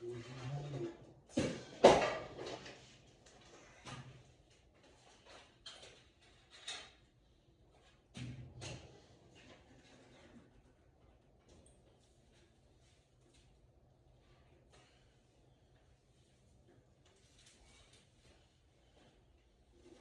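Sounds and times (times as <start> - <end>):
objects knocking as set down: 1.3 - 2.6.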